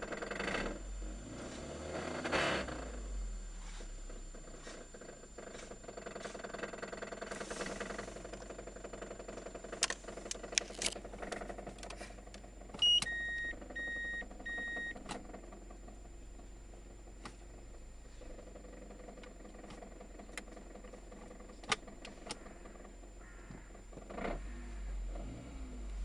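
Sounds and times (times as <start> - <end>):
car engine knocking: 0.0 - 3.2, 3.9 - 25.4
short electronic beeps: 12.8 - 15.0.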